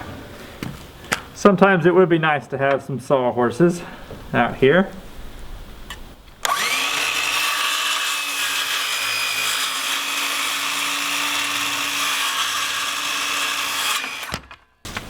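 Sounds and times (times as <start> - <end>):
power saw cutting board: 6.4 - 15.0.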